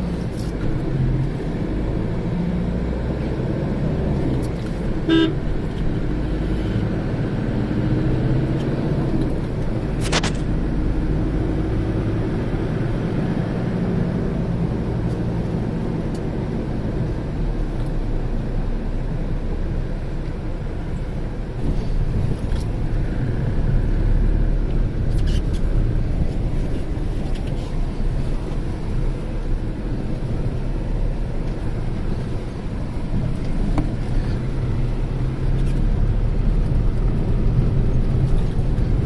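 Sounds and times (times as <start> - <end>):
vehicle engine and road rumble: 0.0 - 39.0
short horn toot: 5.1 - 5.4.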